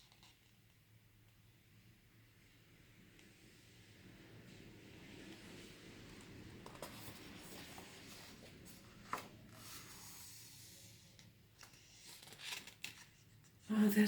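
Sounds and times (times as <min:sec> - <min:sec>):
paper rustling: 0:06.2 - 0:13.6.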